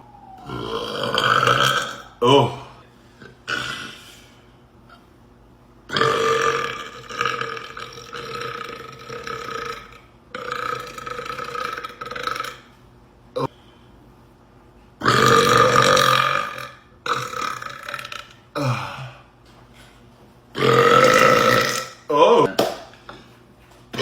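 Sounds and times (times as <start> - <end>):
man burping: 0.5 - 2.8, 3.4 - 4.0, 5.9 - 12.6, 15.0 - 19.3, 20.6 - 22.6.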